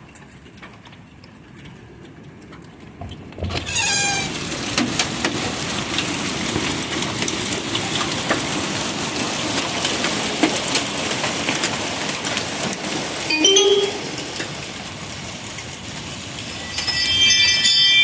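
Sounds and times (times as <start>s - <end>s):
hail pelting a car: 2.4s - 13.3s
falling squeal: 3.6s - 4.4s.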